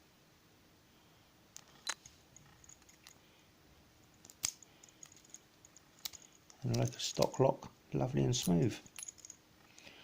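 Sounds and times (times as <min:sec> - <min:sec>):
small metal parts clicking: 0:01.6 - 0:03.2, 0:04.1 - 0:07.4, 0:08.8 - 0:10.0.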